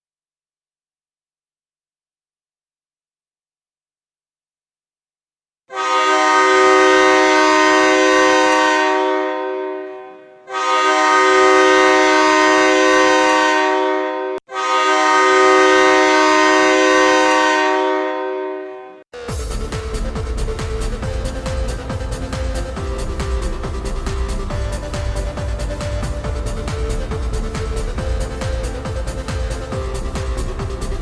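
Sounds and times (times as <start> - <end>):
hockey goal horn blasts: 5.7 - 31.0
electronic dance music: 19.2 - 31.0.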